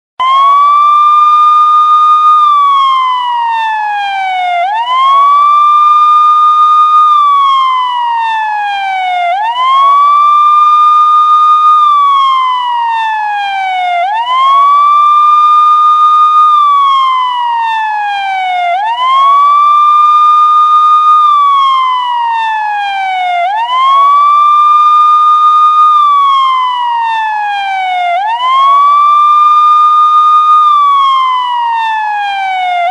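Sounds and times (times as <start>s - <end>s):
police siren wailing: 0.2s - 32.9s.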